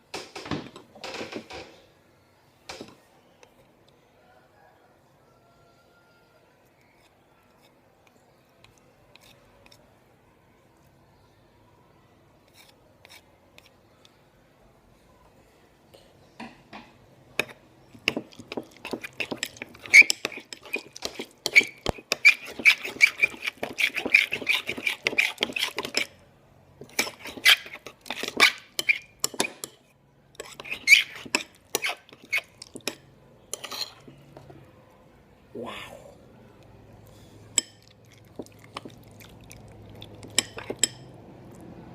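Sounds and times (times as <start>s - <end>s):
utensil stirring and scraping slime: 6.7s - 10.0s, 12.4s - 13.8s, 17.4s - 34.6s, 37.0s - 41.6s.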